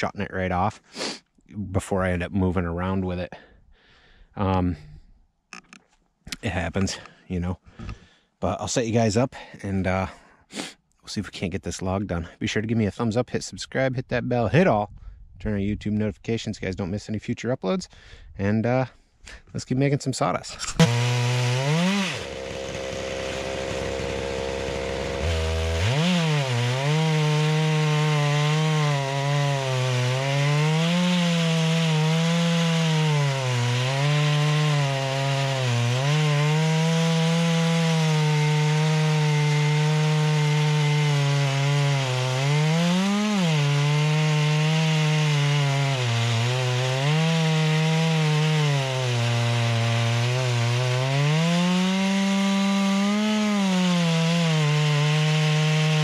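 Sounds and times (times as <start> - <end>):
man talking: 0.0 - 3.5, 4.4 - 5.0, 6.3 - 7.7, 8.4 - 20.8
chainsaw cutting log: 20.6 - 56.0.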